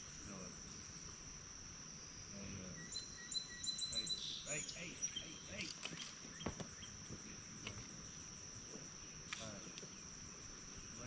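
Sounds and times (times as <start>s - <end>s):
insects trilling: 0.0s - 11.0s
brief rustle: 9.3s - 9.6s.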